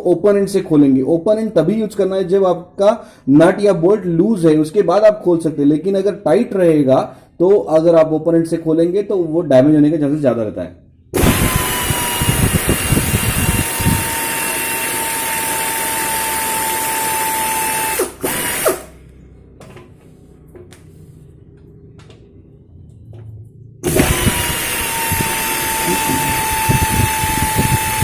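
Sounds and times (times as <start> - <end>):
pneumatic wrench whining: 11.2 - 19.0, 23.8 - 28.0.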